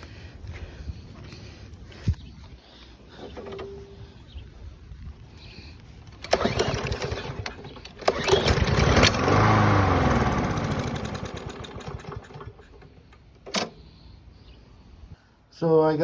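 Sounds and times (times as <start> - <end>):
recoil cord pulls rattling: 6.1 - 9.6
mower engine firing and dying: 6.1 - 13.8.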